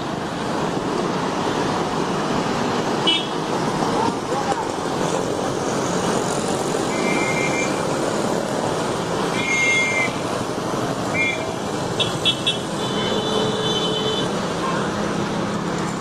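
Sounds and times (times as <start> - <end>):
busy road traffic: 0.0 - 16.0
vehicle horn toots: 9.4 - 10.2, 11.1 - 14.3.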